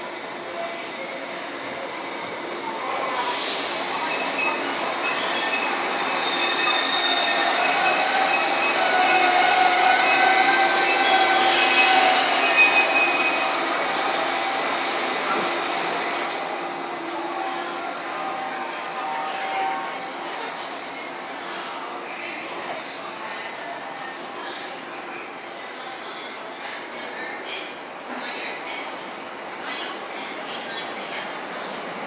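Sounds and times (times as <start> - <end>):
train wheels squealing: 3.2 - 22.0.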